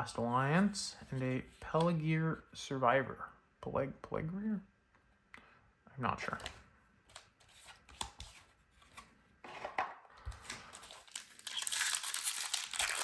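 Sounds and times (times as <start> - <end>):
foil wrapper tearing and crackling: 10.9 - 13.0.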